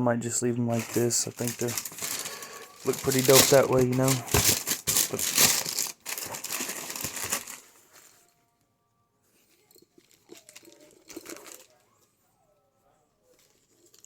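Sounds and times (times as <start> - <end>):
packaging crinkling and rustling: 0.7 - 8.1.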